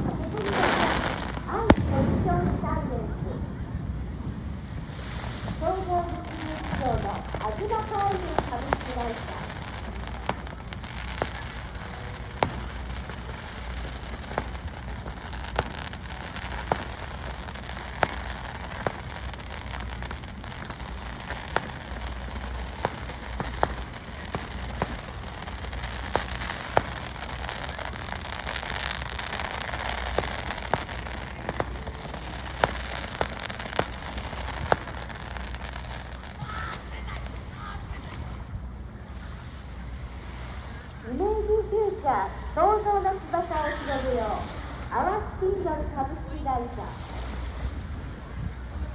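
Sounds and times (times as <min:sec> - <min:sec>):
firework shells bursting: 0:00.0 - 0:03.1, 0:04.2 - 0:37.4
fireworks crackling hiss: 0:00.0 - 0:48.9.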